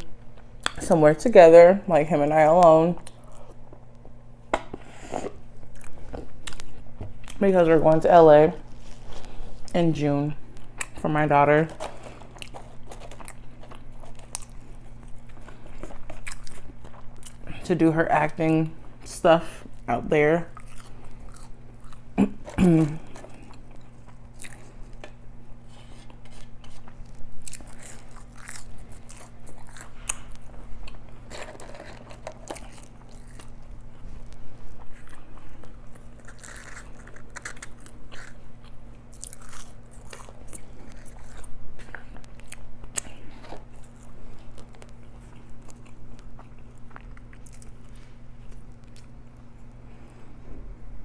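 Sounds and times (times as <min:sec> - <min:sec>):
steady low hum: 0:00.0 - 0:51.0
person chewing food: 0:03.0 - 0:07.4, 0:11.7 - 0:17.6, 0:20.5 - 0:50.1.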